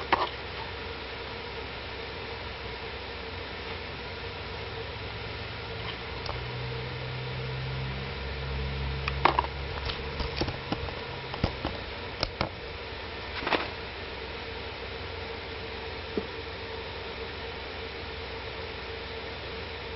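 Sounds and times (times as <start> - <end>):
sharp clicks and knocks: 9.1 - 12.6.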